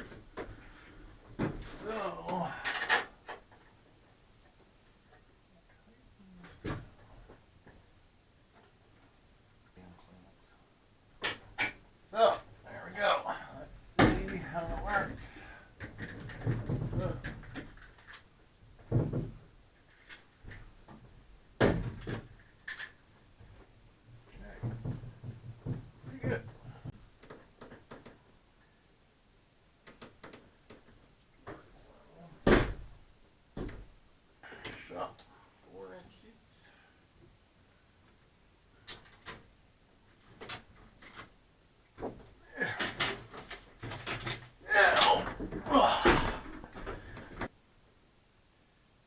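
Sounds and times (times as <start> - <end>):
wooden panels thudding: 14.0 - 17.8, 20.9 - 22.4, 32.4 - 33.0, 42.0 - 47.5.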